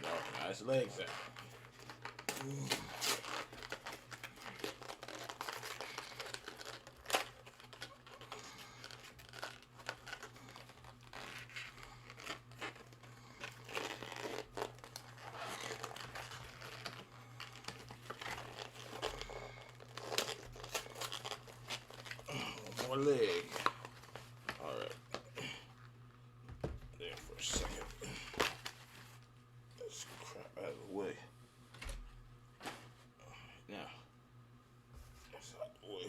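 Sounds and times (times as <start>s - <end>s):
steady low hum: 0.0s - 36.0s
packaging tearing and crinkling: 1.1s - 25.2s.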